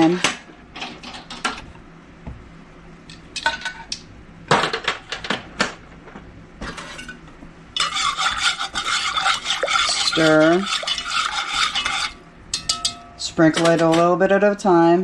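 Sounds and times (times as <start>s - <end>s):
metal utensil clinking against pan: 7.8s - 14.1s.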